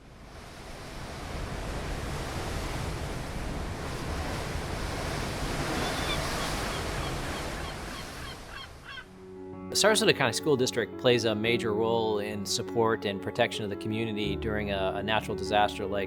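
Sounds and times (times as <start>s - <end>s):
wind: 0.0s - 9.2s
surf: 0.3s - 9.1s.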